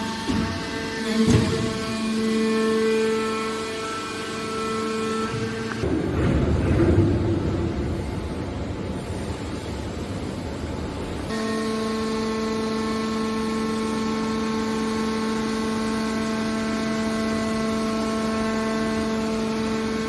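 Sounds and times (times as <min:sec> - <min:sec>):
hydraulic baler shear humming: 0:00.0 - 0:08.4, 0:11.2 - 0:20.0.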